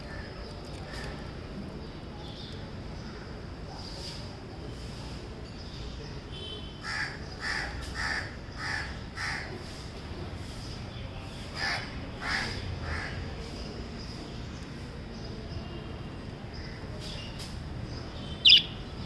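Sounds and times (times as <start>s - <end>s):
parrot chirping: 18.4s - 18.8s.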